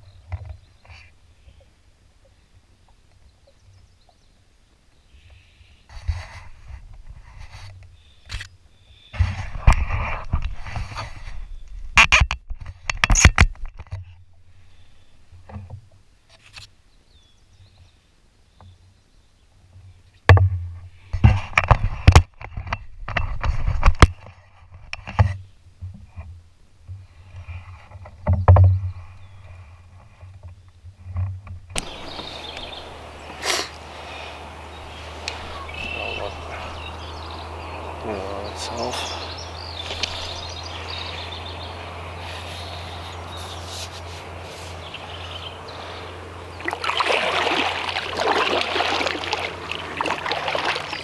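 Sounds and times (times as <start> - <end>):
steady outdoor hiss: 0.0 - 51.0
gear knocking and scraping in canoe: 20.5 - 51.0.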